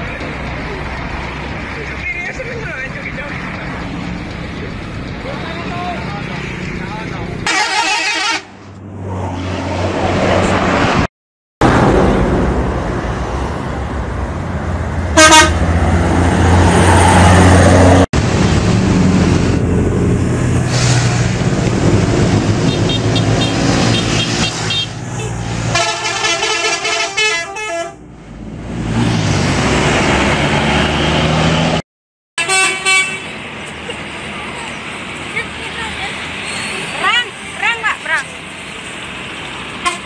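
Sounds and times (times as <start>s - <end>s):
bus engines humming: 0.0s - 31.8s, 32.4s - 40.0s
musical bus horns: 7.4s - 8.6s, 15.1s - 15.7s, 22.6s - 28.1s, 32.4s - 33.4s, 39.8s - 40.0s.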